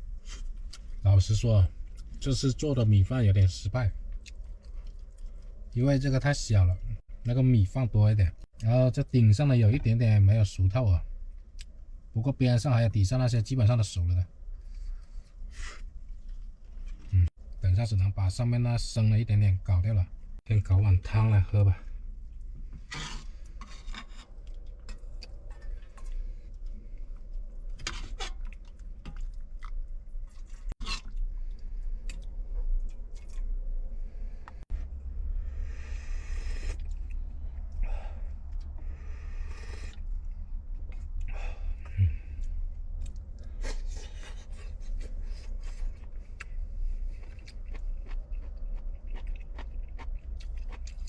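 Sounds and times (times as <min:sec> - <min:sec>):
low steady hum: 0:00.0 - 0:51.0
chewing crunchy mushroom stems: 0:23.9 - 0:33.6, 0:40.8 - 0:51.0
low rumble: 0:31.2 - 0:43.6.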